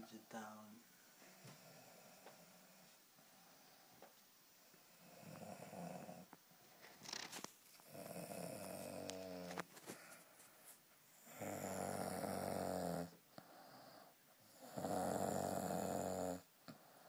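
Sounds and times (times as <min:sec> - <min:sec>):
boy snoring: 0:01.4 - 0:03.9, 0:04.8 - 0:06.3, 0:07.0 - 0:09.6, 0:11.2 - 0:17.0.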